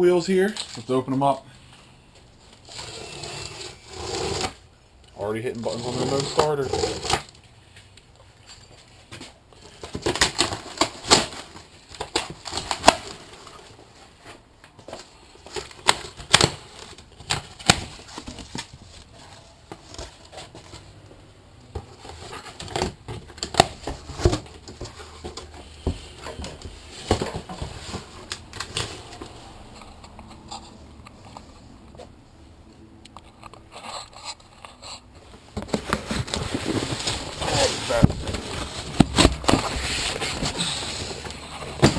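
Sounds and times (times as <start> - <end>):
cardboard box being handled: 35.5 - 41.9.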